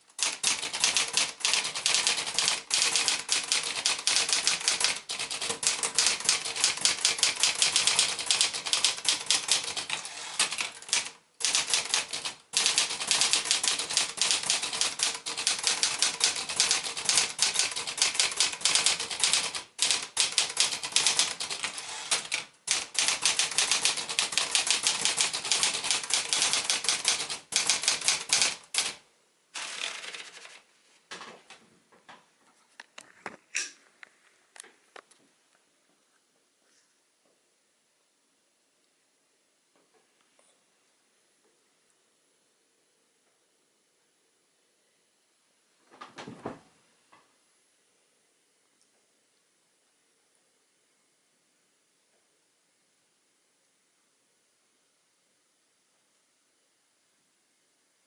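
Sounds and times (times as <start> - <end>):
manual typewriter typing: 0.1 - 29.0, 29.6 - 30.6.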